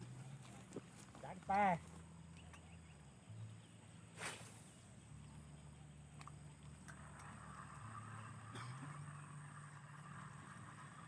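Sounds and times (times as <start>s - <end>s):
fishing rod whoosh: 4.1s - 4.9s
fishing reel clicks and whir: 6.0s - 11.0s.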